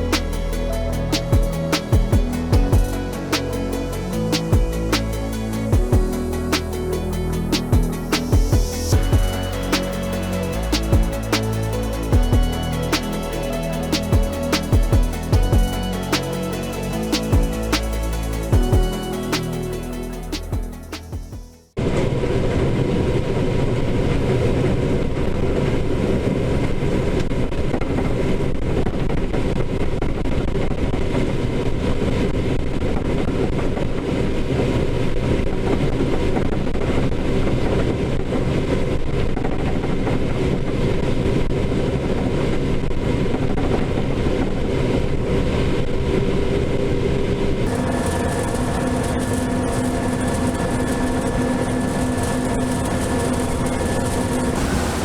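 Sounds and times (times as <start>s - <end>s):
steady whining tones: 0.0s - 21.6s, 47.6s - 55.0s
combine harvester droning: 47.7s - 55.0s.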